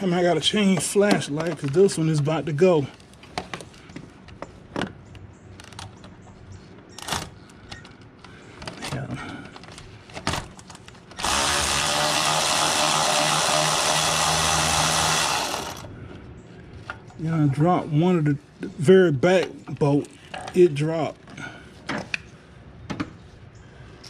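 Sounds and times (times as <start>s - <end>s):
power ratchet running: 11.2s - 15.9s.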